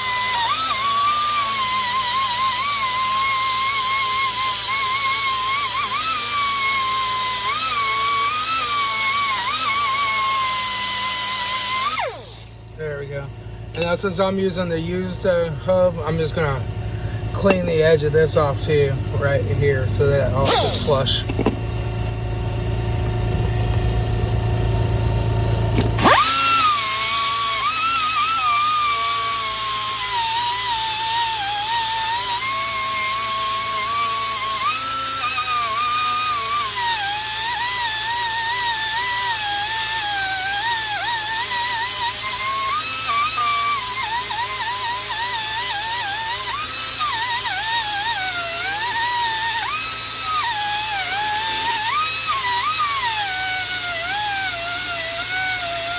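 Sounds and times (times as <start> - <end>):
angle grinder whining: 0.0 - 55.9
low steady hum: 12.0 - 36.7.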